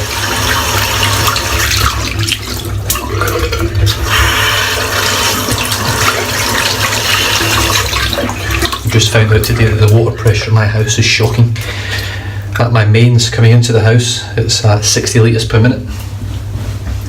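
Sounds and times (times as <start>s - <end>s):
water running from a tap: 0.0s - 12.5s
brush rinsed under water: 0.0s - 12.6s.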